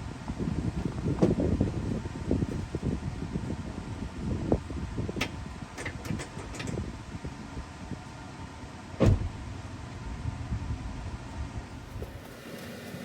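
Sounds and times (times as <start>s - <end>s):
heavy thump: 9.0s - 9.4s.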